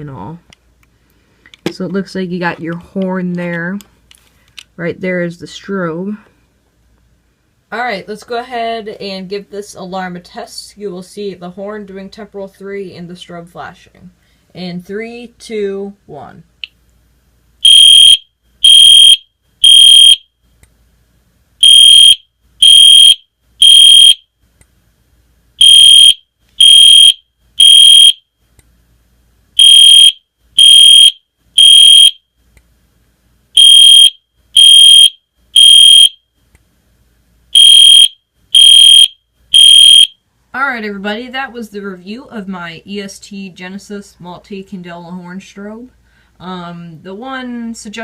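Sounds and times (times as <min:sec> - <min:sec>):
fire alarm horn beeping: 0:17.6 - 0:20.2, 0:21.6 - 0:24.2, 0:25.6 - 0:28.2, 0:29.6 - 0:32.2, 0:33.6 - 0:36.2, 0:37.6 - 0:40.2.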